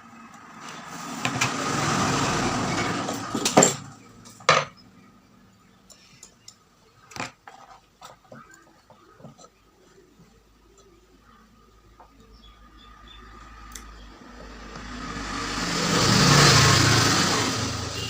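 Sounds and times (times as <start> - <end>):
small tools clicking and tapping: 5.8 - 9.6.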